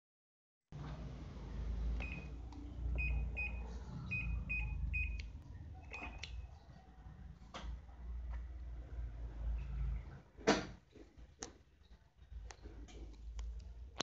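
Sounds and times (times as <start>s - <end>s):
washing machine beeps: 2.0s - 5.2s, 5.8s - 6.4s.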